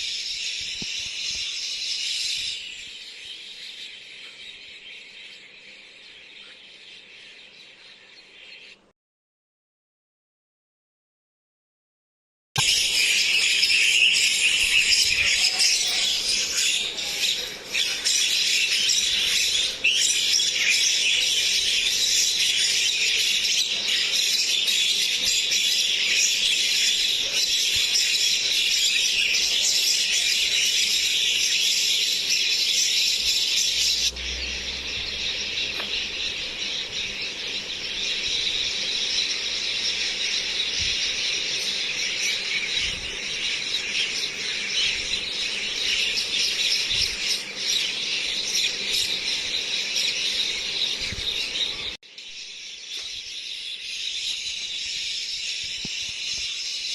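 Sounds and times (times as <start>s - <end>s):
high-pitched chorus: 12.6s - 18.0s
myna squealing and chattering: 14.9s - 16.8s.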